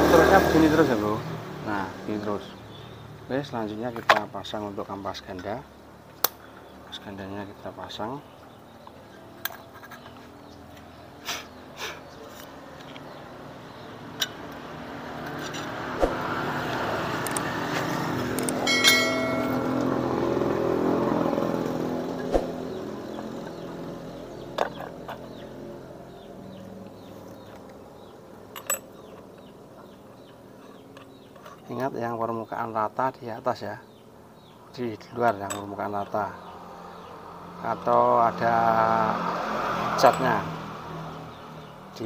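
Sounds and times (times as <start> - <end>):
road vehicle passing: 0.0 - 31.7, 35.6 - 42.0
metallic clinks of parts handled: 18.2 - 19.9, 28.5 - 29.6, 35.3 - 36.2.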